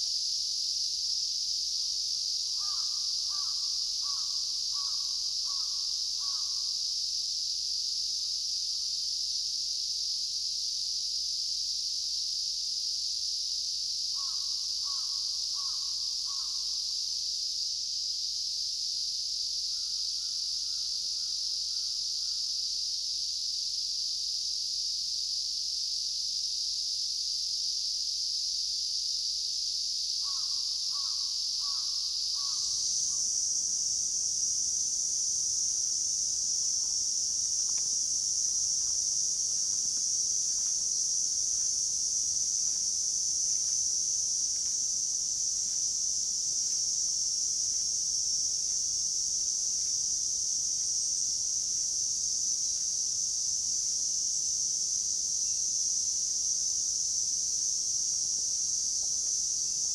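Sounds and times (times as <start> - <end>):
crow cawing: 2.6 - 6.5, 14.2 - 16.5, 30.2 - 32.8
high-pitched insect drone: 2.6 - 6.7, 30.2 - 53.9.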